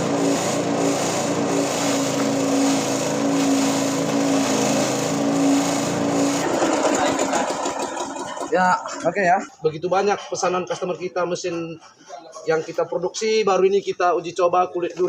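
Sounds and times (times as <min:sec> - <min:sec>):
engine drone: 0:00.0 - 0:09.2
rough chatter of cutting: 0:00.1 - 0:09.5.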